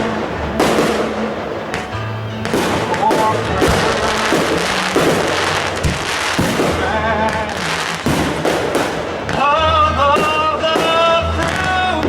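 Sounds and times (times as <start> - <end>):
constant hiss: 0.0 - 12.0
fireworks bangs and crackles: 0.0 - 12.0
music with singing: 0.0 - 12.0.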